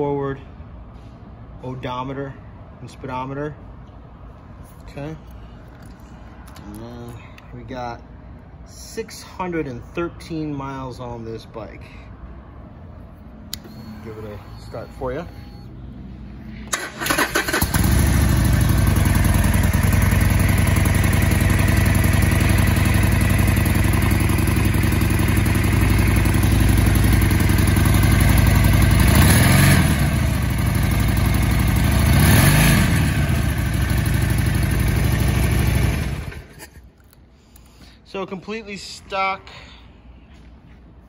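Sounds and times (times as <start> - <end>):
motorcycle engine starting and idling: 13.5 - 36.6
motorcycle engine revving: 16.8 - 36.5.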